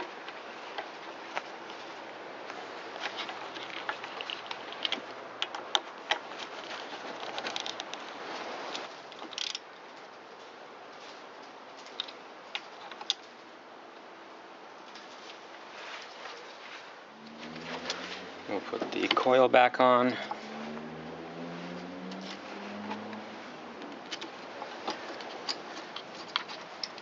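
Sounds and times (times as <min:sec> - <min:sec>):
hand tools clicking and tapping: 0:23.8 - 0:27.0.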